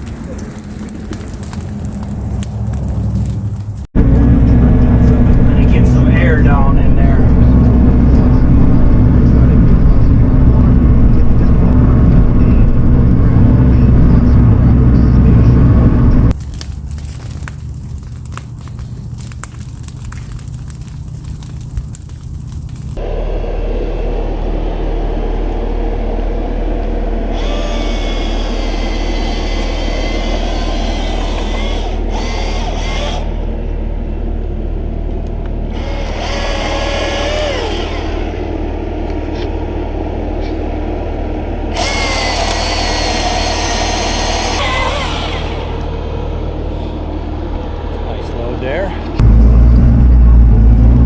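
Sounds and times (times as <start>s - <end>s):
diesel engine running: 0.0s - 51.0s
high wavering whine: 20.7s - 48.4s.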